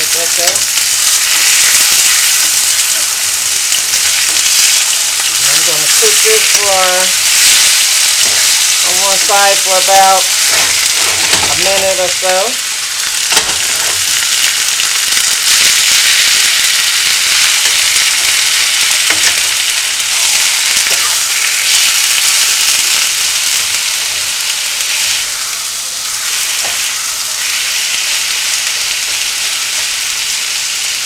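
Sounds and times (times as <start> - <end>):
chicken sizzling in oil: 0.0 - 31.0.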